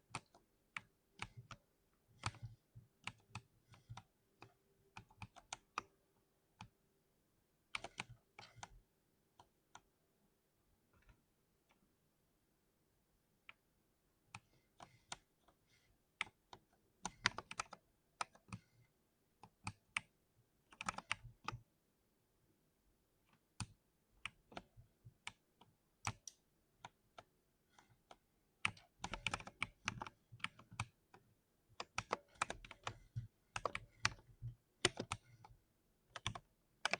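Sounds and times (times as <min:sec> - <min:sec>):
mechanical keyboard typing: 0:00.1 - 0:01.6, 0:02.2 - 0:05.9, 0:07.7 - 0:08.8, 0:16.2 - 0:18.8, 0:19.5 - 0:21.6, 0:26.0 - 0:31.2, 0:31.8 - 0:35.5, 0:36.1 - 0:36.9.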